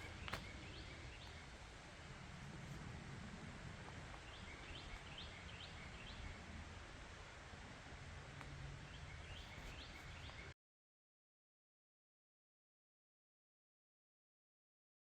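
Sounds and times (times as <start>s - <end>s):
songbird chirping: 0.0s - 10.6s
steady outdoor hiss: 0.0s - 10.6s.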